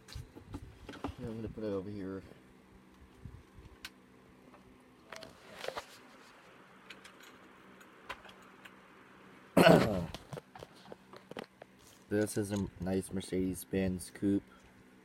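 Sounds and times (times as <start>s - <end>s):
faint steady hum: 0.0s - 15.0s
scrape: 5.3s - 6.5s.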